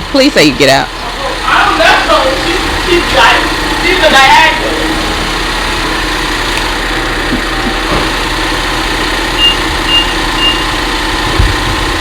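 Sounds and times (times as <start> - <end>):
car engine idling: 0.0 - 12.0
parking sensor beeps: 9.3 - 10.9.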